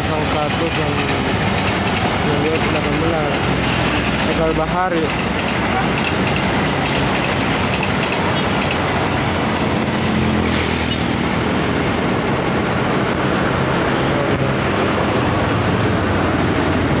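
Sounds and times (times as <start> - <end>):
diesel train rumbling: 0.0 - 17.0.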